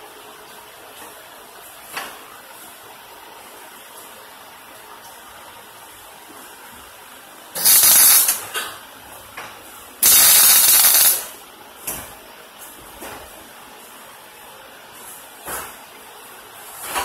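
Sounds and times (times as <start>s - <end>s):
welder arc crackling: 7.6s - 8.6s, 10.0s - 11.3s.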